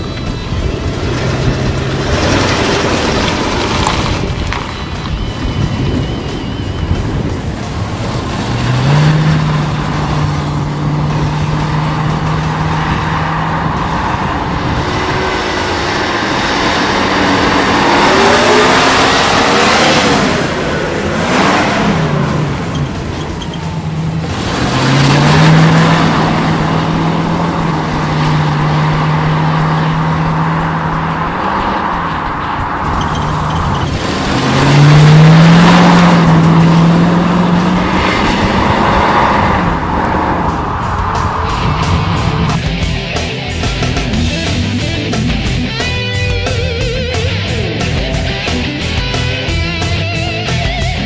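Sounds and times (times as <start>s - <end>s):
car engine running: 0.0s - 51.0s.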